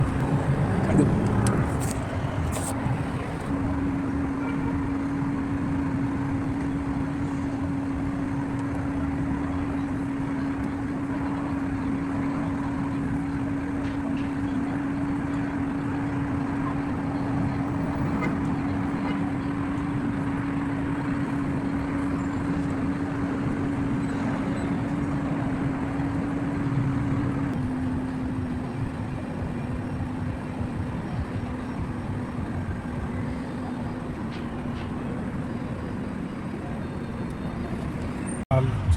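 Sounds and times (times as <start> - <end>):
car engine running: 0.0 - 4.5, 37.2 - 38.9.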